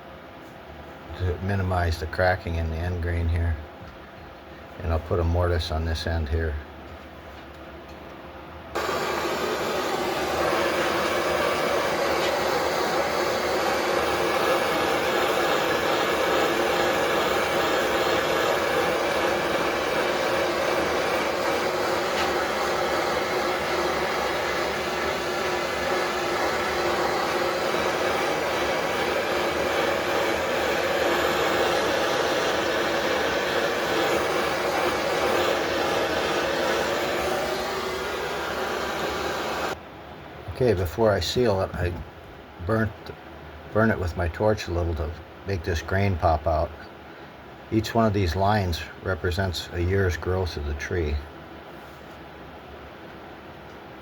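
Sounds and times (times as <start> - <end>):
wood lathe turning wood: 8.8 - 39.8.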